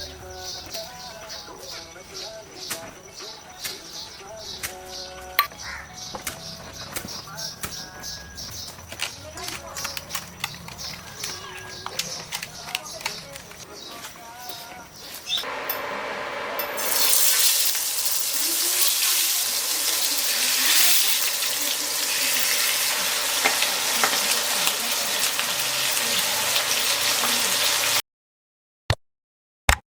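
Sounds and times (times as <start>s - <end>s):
oil popping and crackling: 8.7s - 13.6s, 16.6s - 28.0s
fish sizzling in hot oil: 15.4s - 28.0s.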